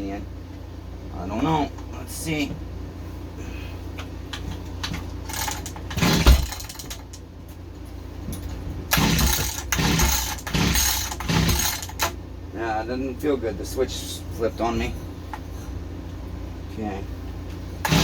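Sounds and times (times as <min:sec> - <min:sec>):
small engine cranking: 0:05.3 - 0:07.0, 0:08.9 - 0:12.1
recoil starter pulls: 0:05.3 - 0:07.2, 0:08.9 - 0:12.2.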